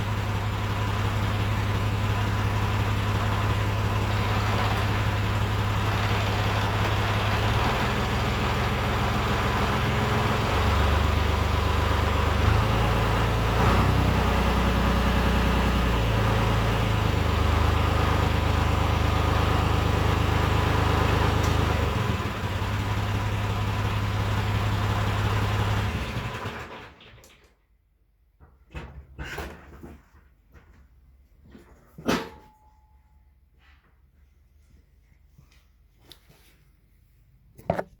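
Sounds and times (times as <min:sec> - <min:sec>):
tractor engine running: 0:00.0 - 0:27.0.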